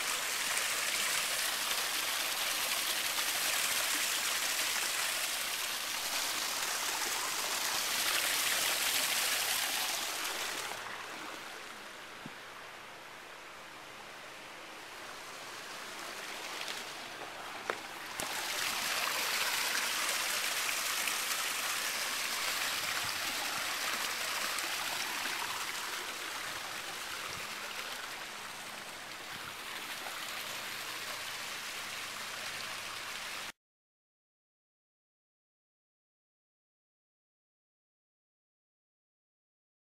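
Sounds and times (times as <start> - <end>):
waterfall splashing into pool: 18.1 - 28.6.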